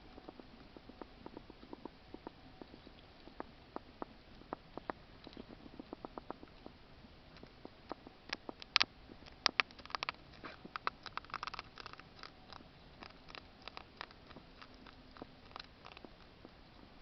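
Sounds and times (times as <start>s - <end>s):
hedgehog eating clicks and smacks: 7.3s - 17.0s.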